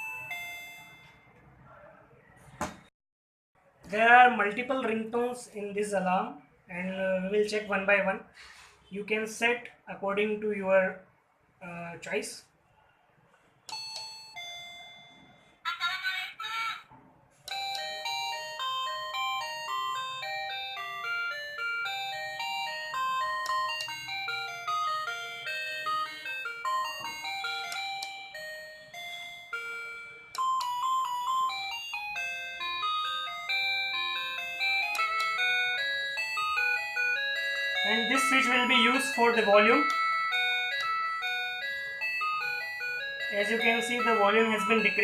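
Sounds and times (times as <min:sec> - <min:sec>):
doorbell electronic beeping melody: 0:00.0 - 0:01.4, 0:13.7 - 0:15.6, 0:17.5 - 0:45.0.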